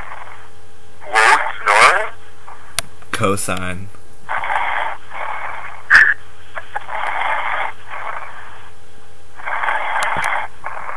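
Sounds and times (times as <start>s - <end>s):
person snoring over telephone: 9.4s - 10.9s.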